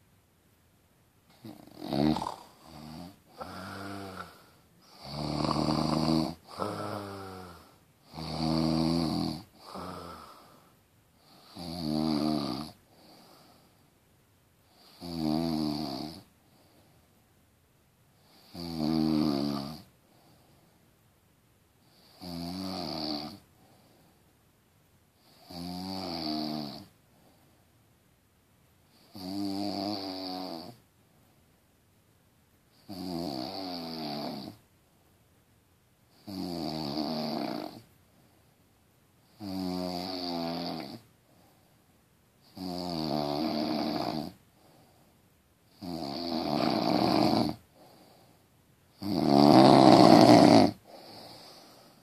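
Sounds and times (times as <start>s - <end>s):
person snoring: 1.3s - 13.6s, 14.7s - 16.3s, 18.2s - 19.9s, 21.9s - 23.4s, 25.2s - 26.9s, 28.9s - 30.8s, 32.8s - 34.6s, 36.2s - 37.9s, 39.3s - 41.1s, 42.4s - 44.8s, 45.7s - 48.2s, 48.9s - 52.0s.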